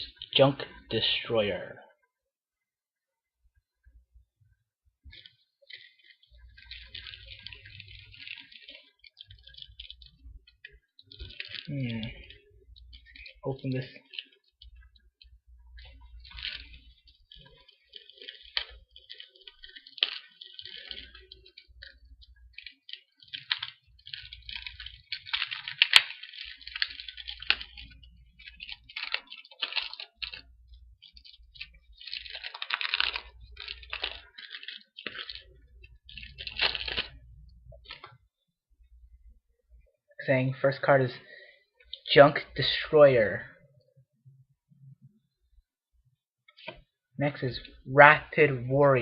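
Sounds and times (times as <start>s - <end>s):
plastic wrapping crinkling and tearing: 5.1s - 38.3s, 41.8s - 42.9s, 46.5s - 46.9s.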